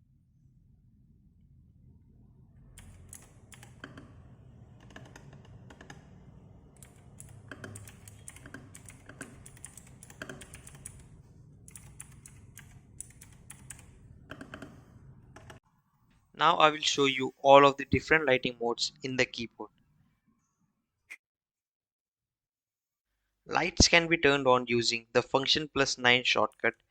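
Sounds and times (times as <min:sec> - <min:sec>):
mechanical keyboard typing: 0:02.8 - 0:04.2, 0:04.8 - 0:15.6.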